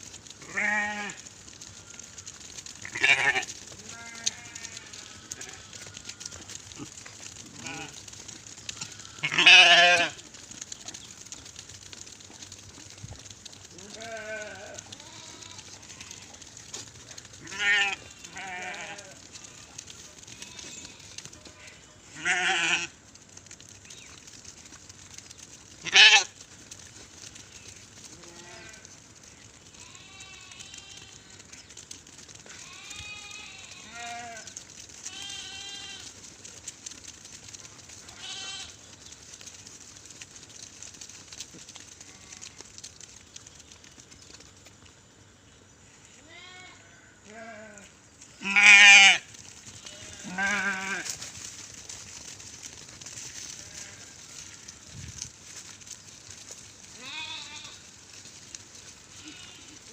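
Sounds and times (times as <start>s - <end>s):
sheep bleating: 0.4s - 10.2s, 13.7s - 16.5s, 17.4s - 23.0s, 25.8s - 26.4s, 28.1s - 28.9s, 29.7s - 31.4s, 32.5s - 36.2s, 38.1s - 38.8s, 46.2s - 51.2s, 56.9s - 57.9s, 59.1s - 59.9s.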